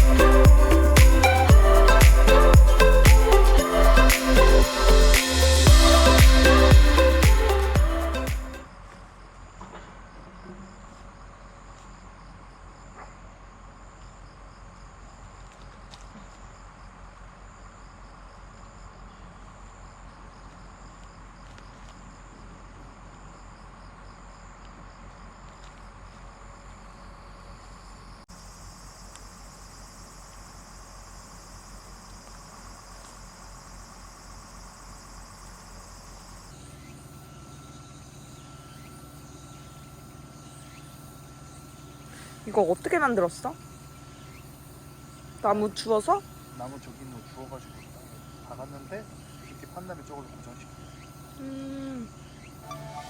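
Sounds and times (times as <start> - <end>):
background hiss: 0.0 - 8.6
crickets chirping: 0.0 - 53.0.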